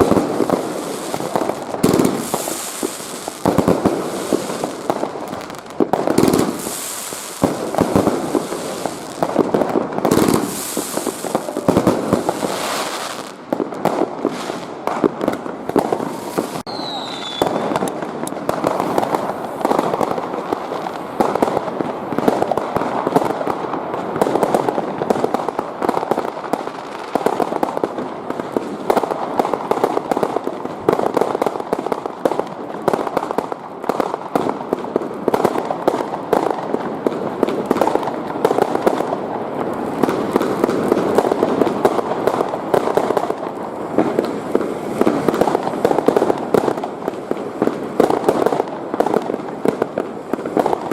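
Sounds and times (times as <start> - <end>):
fireworks and firecrackers banging: 0.0 - 50.9
falling rocket whistle: 16.2 - 17.9.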